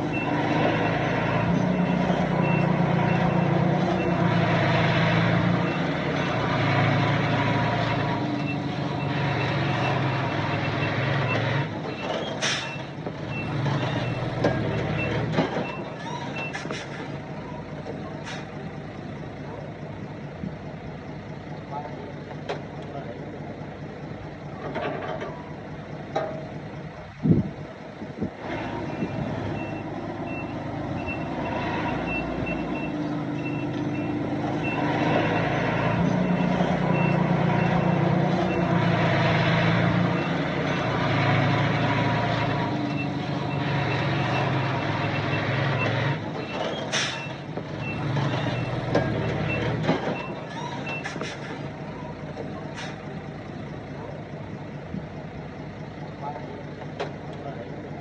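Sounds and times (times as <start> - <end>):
diesel engine: 0.0 - 58.0
reversing alarm beeping: 0.1 - 4.3, 29.5 - 38.8, 42.9 - 51.1.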